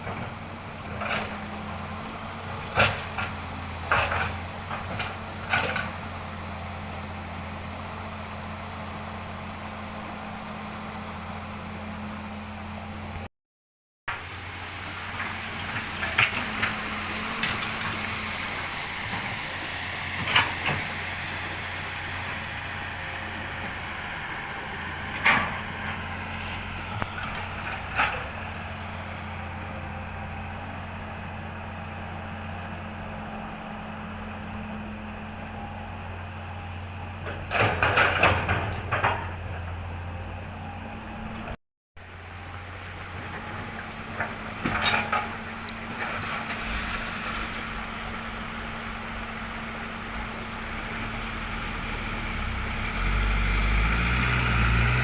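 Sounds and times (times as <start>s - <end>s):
excavator diesel engine running: 0.0s - 13.3s, 14.1s - 55.0s
soil clattering into truck: 2.5s - 6.6s, 43.2s - 50.0s.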